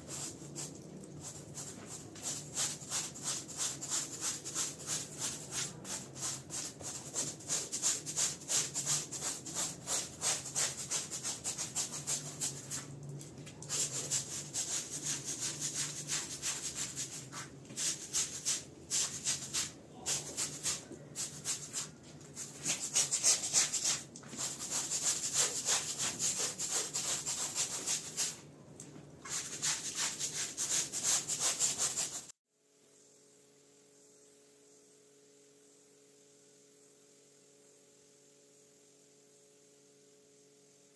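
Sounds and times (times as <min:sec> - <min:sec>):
stiff brush scrubbing wet rug: 0:00.1 - 0:13.0, 0:13.6 - 0:28.4.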